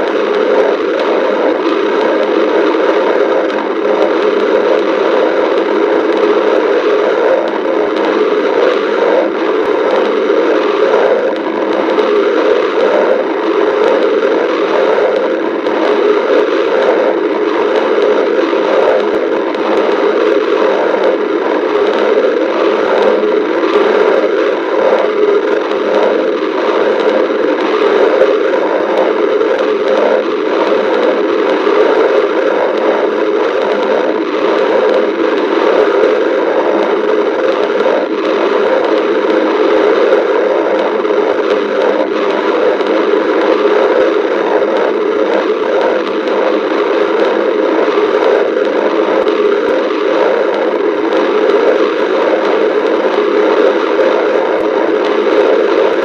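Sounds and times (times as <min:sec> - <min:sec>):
stomach growling and gurgling: 0:00.0 - 0:56.0.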